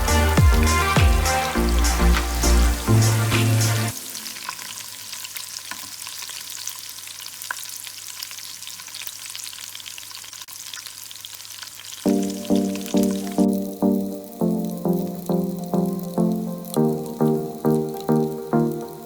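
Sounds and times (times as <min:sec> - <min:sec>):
background music: 0:00.0 - 0:04.5, 0:12.1 - 0:19.0
hot oil sizzling and popping: 0:00.0 - 0:19.0.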